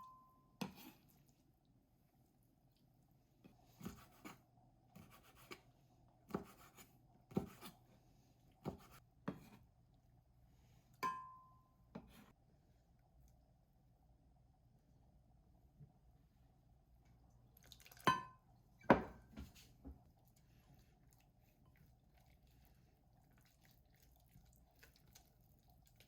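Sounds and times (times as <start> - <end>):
ringing clink of glass: 0.0 - 0.5, 11.0 - 11.7
kitchen knocks and taps: 18.8 - 20.0.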